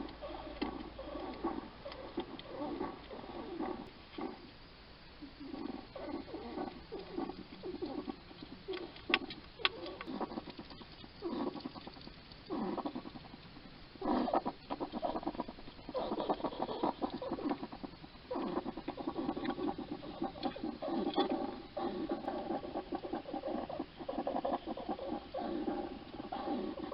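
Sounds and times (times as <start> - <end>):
hedgehog rasping breathing: 18.4 - 26.9.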